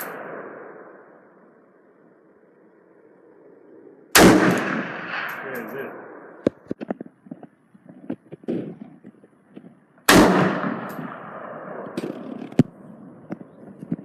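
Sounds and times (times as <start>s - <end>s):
loud gunshot echoing: 4.1s - 6.4s, 10.1s - 12.2s.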